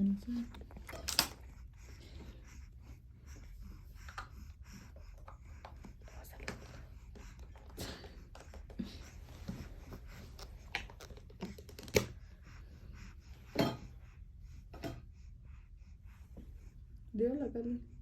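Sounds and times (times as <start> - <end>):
low room hum: 0.0 - 18.0
light clicks of things handled: 0.4 - 1.5
rustling of things handled: 5.2 - 12.2.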